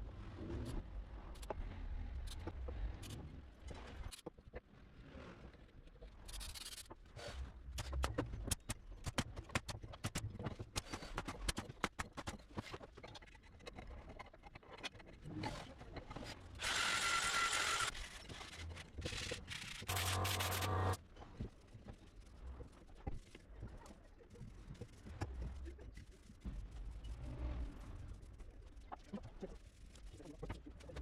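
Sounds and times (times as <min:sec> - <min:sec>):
small power tool burst: 0:16.6 - 0:18.0, 0:19.9 - 0:21.0.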